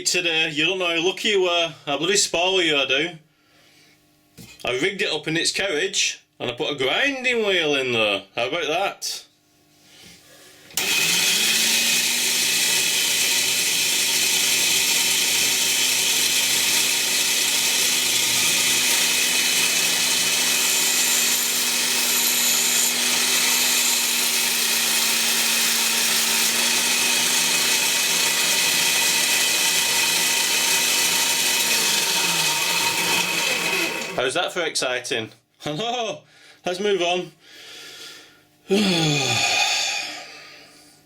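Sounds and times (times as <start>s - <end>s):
electric drill motor whine: 10.7s - 34.2s.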